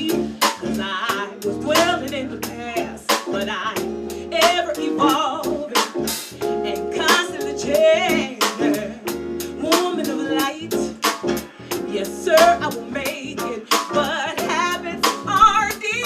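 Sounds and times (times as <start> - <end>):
live band playing: 0.0 - 16.0
drum kit hits: 10.9 - 12.8.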